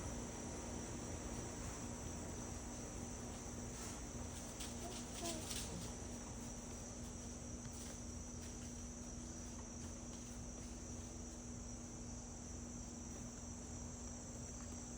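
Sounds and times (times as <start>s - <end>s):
constant low hum: 0.0s - 14.9s.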